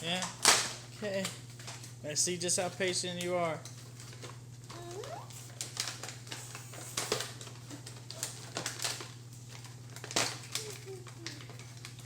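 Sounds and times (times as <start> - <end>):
packaging rustling: 3.9 - 12.0.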